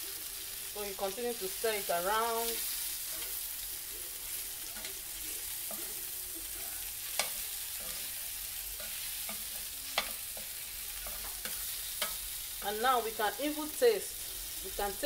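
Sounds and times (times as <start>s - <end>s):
meat sizzling on a grill: 0.0s - 15.0s.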